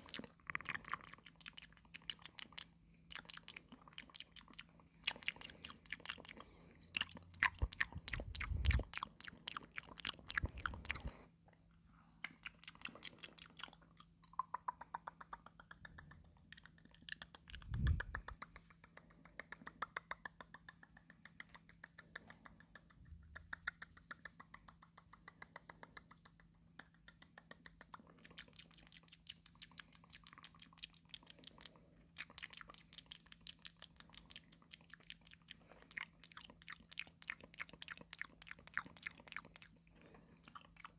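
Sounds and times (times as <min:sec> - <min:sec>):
crunching and chewing cucumber: 0:00.0 - 0:11.2, 0:12.2 - 0:14.5, 0:28.0 - 0:40.9.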